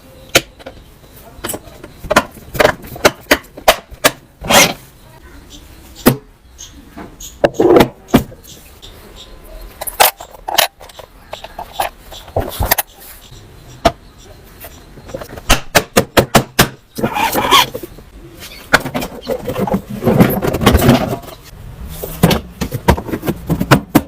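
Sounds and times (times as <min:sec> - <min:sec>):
objects being handled clicking: 0:09.8 - 0:13.4.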